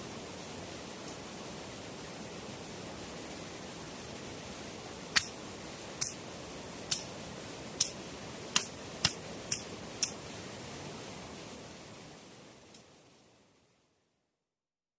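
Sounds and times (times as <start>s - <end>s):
steady hiss: 0.0s - 14.2s.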